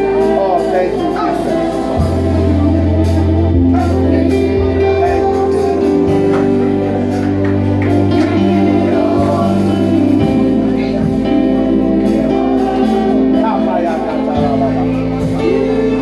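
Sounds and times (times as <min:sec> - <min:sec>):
organ-like keyboard chords: 0:00.0 - 0:16.0.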